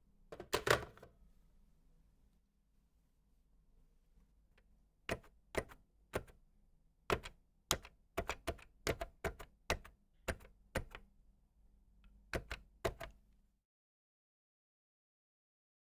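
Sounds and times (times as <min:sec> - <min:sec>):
telephone buttons clicking: 0:07.1 - 0:11.0, 0:12.4 - 0:13.2.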